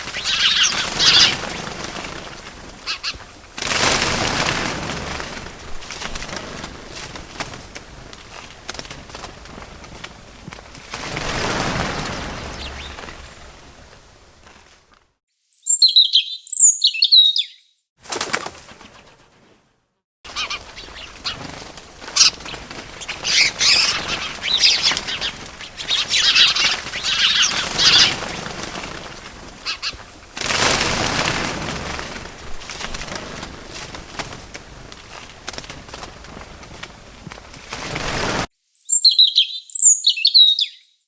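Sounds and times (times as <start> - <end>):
bird wings flapping: 0.0 - 15.2, 18.0 - 19.7, 20.3 - 38.5
rushing whoosh: 10.9 - 14.3.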